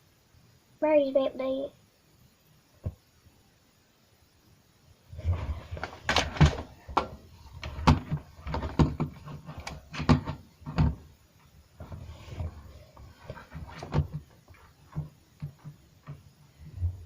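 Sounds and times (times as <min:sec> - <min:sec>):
irregular knocks and thumps: 0:02.8 - 0:03.0, 0:05.2 - 0:17.0.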